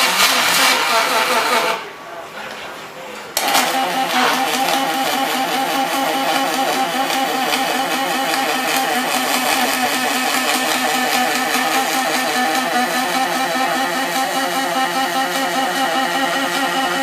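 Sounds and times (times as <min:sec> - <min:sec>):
welding arc buzzing with crackle: 0:03.4 - 0:14.2.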